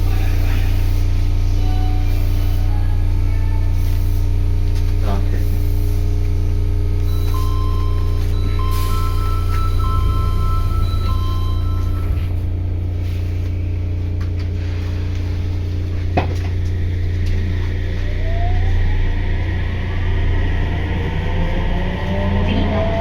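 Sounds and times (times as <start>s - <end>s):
train low hum: 0.0s - 23.0s
inverter whine rising: 15.2s - 23.0s.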